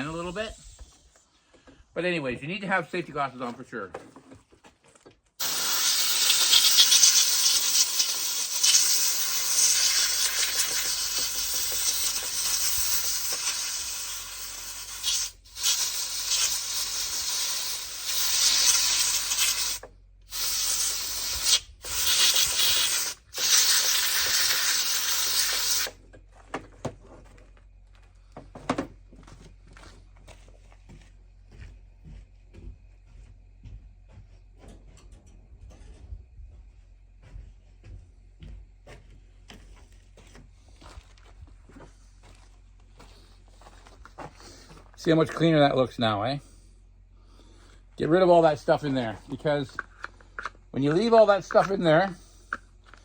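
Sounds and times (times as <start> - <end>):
compressed air hissing: 0.0 - 1.4, 5.4 - 26.0.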